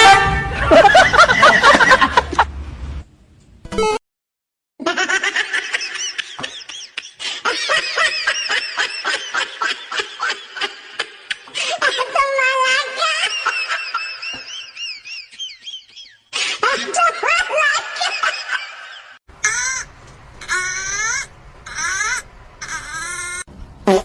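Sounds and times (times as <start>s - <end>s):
hearty laughter: 0.5s - 2.5s, 4.8s - 12.2s, 13.0s - 19.2s.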